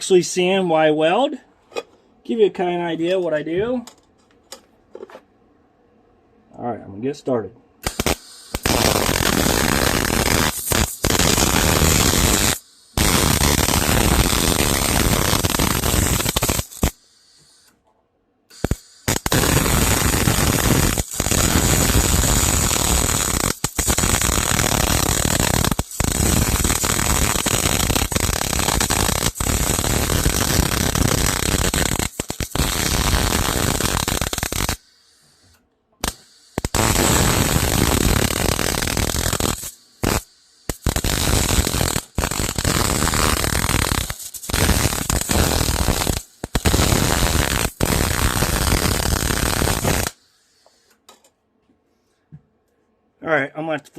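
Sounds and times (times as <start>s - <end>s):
electric arc welding: 7.8s - 17.7s, 18.5s - 34.9s, 36.0s - 50.2s.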